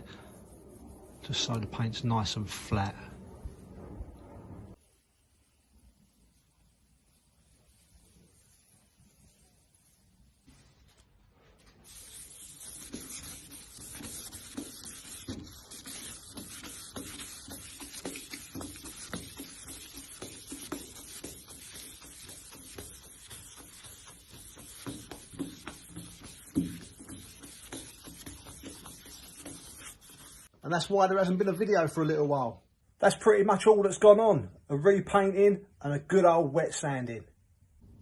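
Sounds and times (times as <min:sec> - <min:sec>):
sandpaper rubbing on car panel: 0:11.9 - 0:30.5.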